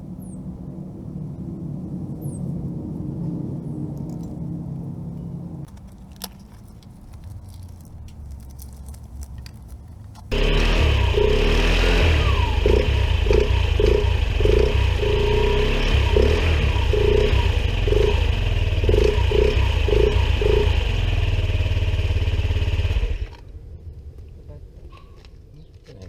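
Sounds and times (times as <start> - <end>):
scooter engine running: 5.7 - 24.0
engine throttle blips: 10.0 - 24.9.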